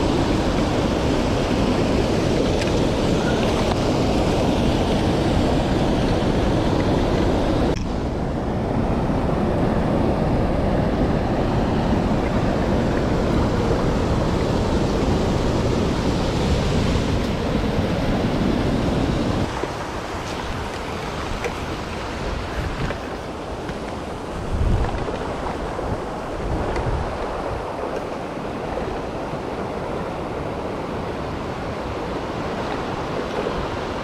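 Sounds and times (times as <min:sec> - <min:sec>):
rushing stream water: 0:00.0 - 0:34.0.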